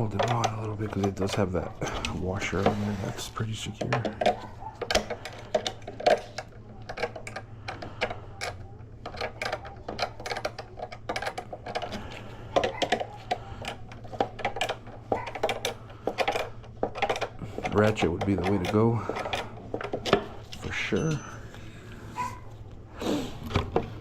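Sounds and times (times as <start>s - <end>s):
low steady hum: 0.0s - 24.0s.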